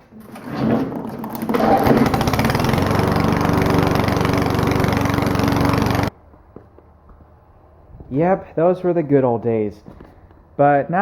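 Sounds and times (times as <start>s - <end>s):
lawn mower engine running: 1.2s - 6.1s.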